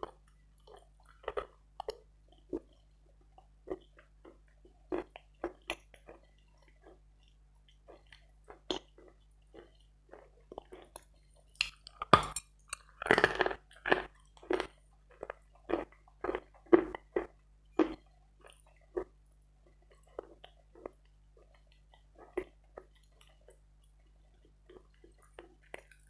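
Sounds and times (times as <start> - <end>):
chalk being chewed: 3.7 - 19.2.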